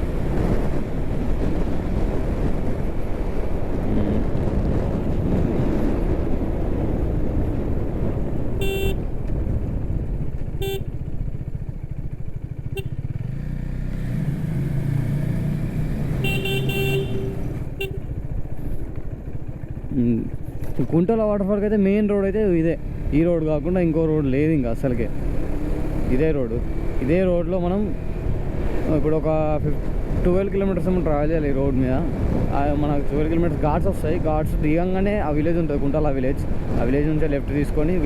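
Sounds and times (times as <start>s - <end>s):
motorcycle engine and wind rumbling: 0.0s - 38.0s
horn honking: 8.5s - 9.2s, 10.6s - 11.1s, 12.7s - 13.2s, 16.1s - 18.3s.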